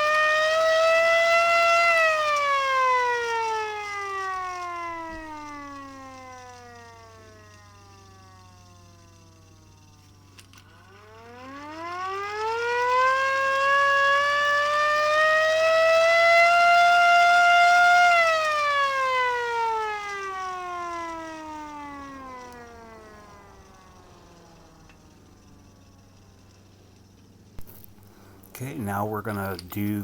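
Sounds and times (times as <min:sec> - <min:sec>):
hand-cranked air raid siren wailing: 0:00.0 - 0:30.0
click: 0:24.8 - 0:25.2.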